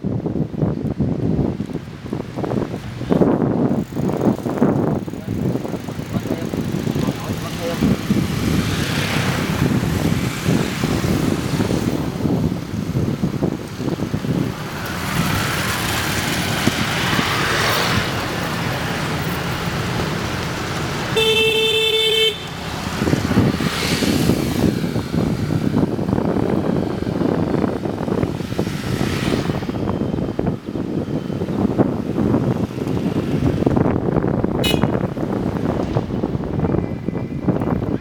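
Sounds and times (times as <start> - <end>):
road traffic passing: 0.1 - 38.0
vehicle horn: 21.1 - 22.6, 34.6 - 35.1.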